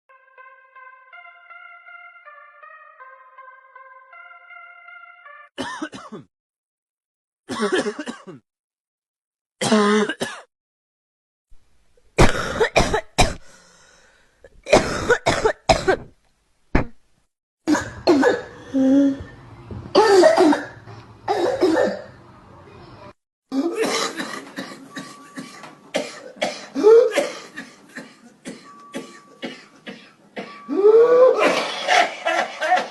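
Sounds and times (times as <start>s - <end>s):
person coughing: 5.6s - 6.3s, 7.5s - 8.4s, 9.6s - 10.5s, 12.2s - 13.5s, 14.7s - 16.1s, 17.7s - 18.5s, 20.0s - 22.1s, 23.5s - 30.8s
rising drawn-out wheeze: 30.6s - 32.1s.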